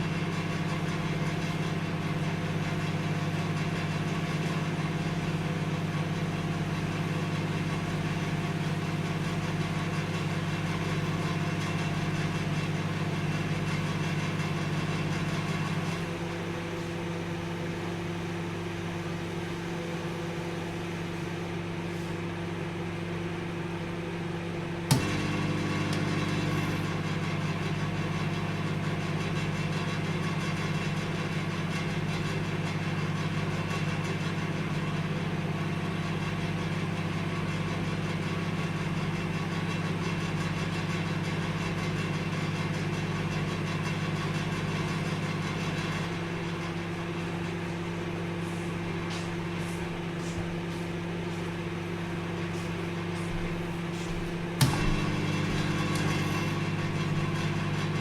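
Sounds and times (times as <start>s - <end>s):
microwave oven humming: 0.0s - 58.0s
sharp click: 24.9s - 25.2s.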